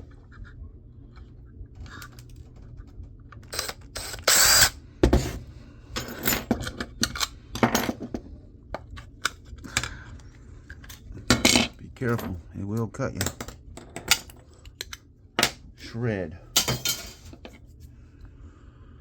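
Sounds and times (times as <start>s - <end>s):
small metal parts clinking: 16.6s - 17.6s.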